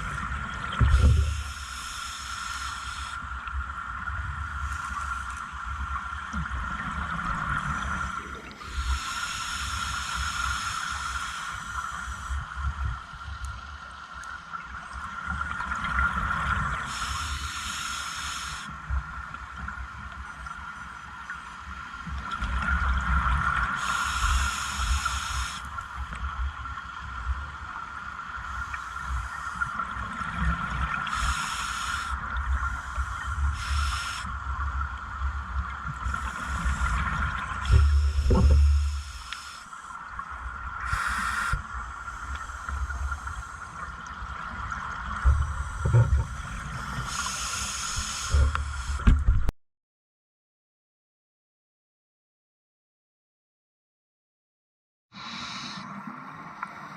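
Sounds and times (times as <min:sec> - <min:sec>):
hissing regulator inhalations: 0:01.0 - 0:03.2, 0:08.6 - 0:12.4, 0:16.9 - 0:18.7, 0:23.8 - 0:25.7, 0:31.0 - 0:34.3, 0:36.0 - 0:39.9, 0:40.8 - 0:43.7, 0:47.0 - 0:49.0, 0:55.2 - 0:55.9.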